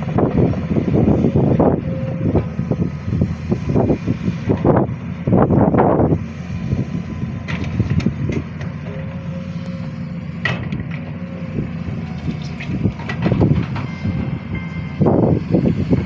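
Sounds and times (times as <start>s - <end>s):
excavator engine drone: 0.0s - 16.0s
metal clanks and knocks: 10.4s - 11.1s, 13.0s - 14.9s.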